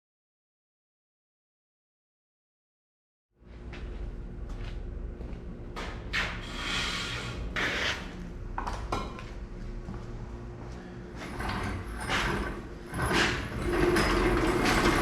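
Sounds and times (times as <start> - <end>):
steady low hum: 3.4 - 15.0
objects knocking and clattering: 11.3 - 15.0.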